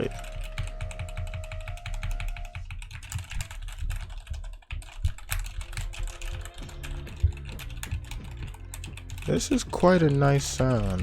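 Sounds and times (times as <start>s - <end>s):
mechanical keyboard typing: 0.0s - 11.0s
person talking: 9.2s - 11.0s.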